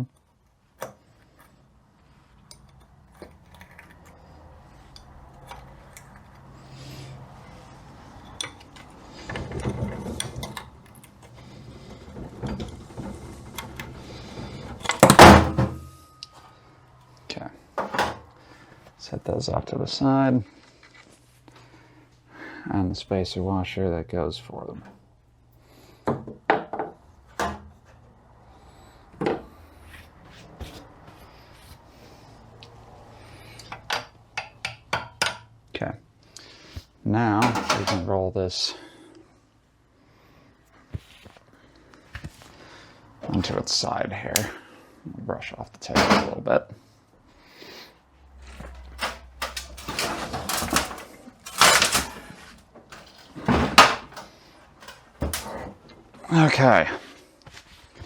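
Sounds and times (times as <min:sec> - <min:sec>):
metal parts knocking on workbench: 0:14.8 - 0:15.9, 0:37.4 - 0:38.0, 0:48.8 - 0:55.7.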